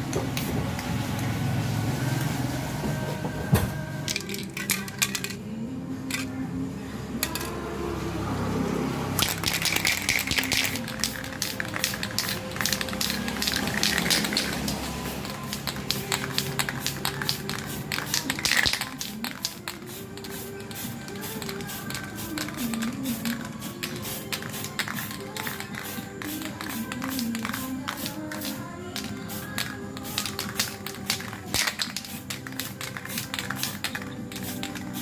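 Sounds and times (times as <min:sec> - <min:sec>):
background music: 0:00.0 - 0:35.0
sharp clicks and clatter: 0:09.2 - 0:19.8, 0:26.4 - 0:34.9.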